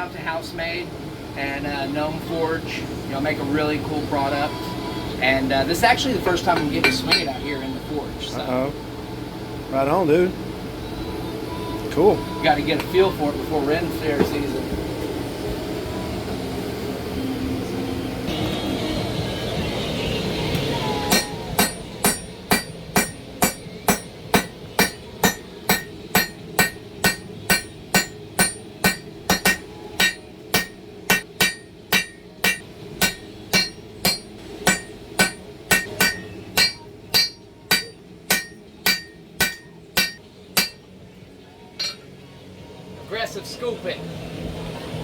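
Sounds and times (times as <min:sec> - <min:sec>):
hammer striking steel on anvil: 0:06.5 - 0:07.4, 0:21.0 - 0:40.9, 0:41.8 - 0:42.0.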